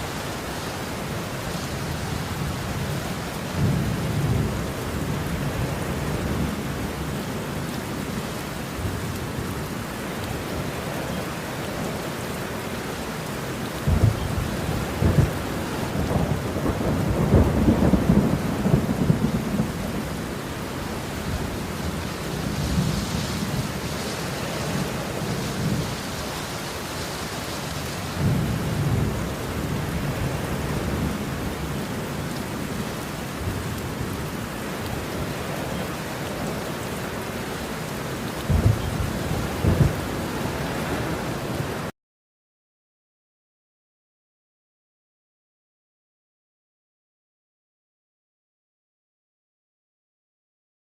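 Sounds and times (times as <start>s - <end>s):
steady rain falling: 0.0s - 41.9s
thunder rumbling: 13.8s - 35.5s, 37.2s - 41.9s.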